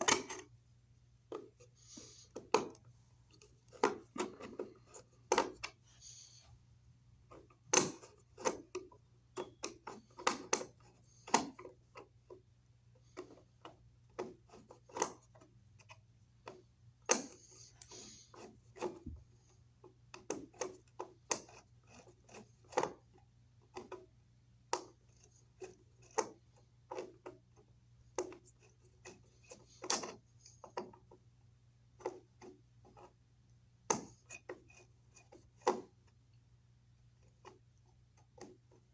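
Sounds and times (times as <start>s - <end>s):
hand tools clicking and tapping: 7.6s - 12.1s.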